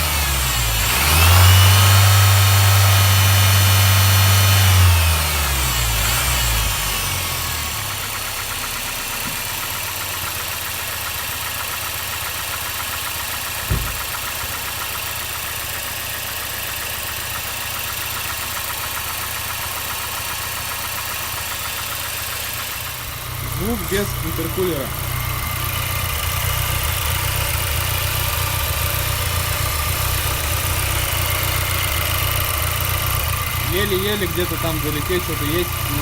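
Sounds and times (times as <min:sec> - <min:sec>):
car engine revving and idling: 0:00.0 - 0:36.0
short thump: 0:09.2 - 0:09.6, 0:13.6 - 0:14.2.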